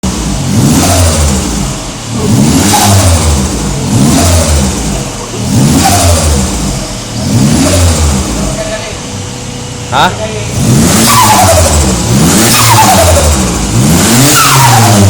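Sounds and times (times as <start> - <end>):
engine revving: 0.0 - 15.0.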